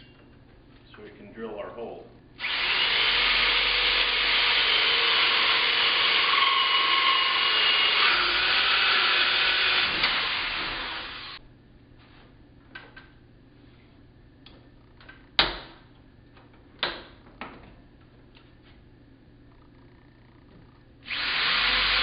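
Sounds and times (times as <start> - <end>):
power drill boring wood: 2.4 - 11.4, 21.1 - 22.0.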